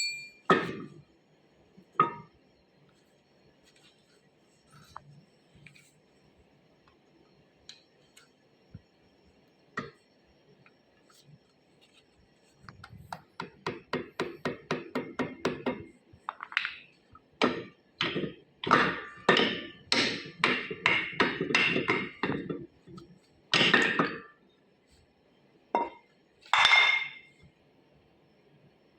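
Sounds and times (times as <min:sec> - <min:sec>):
hammer strikes: 0:13.1 - 0:15.9.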